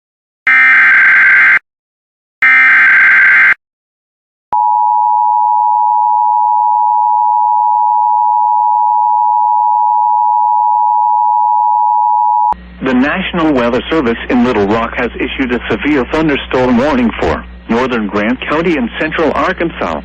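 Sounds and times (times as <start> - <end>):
harsh digital data bursts: 2.4 - 3.6
steady attention tone: 4.6 - 20.0.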